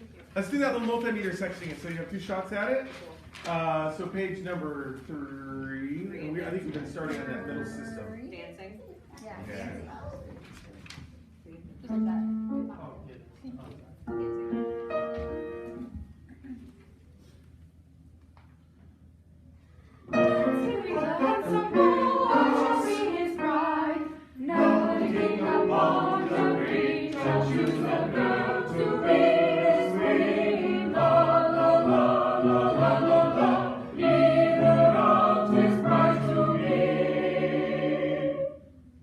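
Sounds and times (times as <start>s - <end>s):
mixed choir singing: 7.1s - 8.2s, 20.1s - 38.8s.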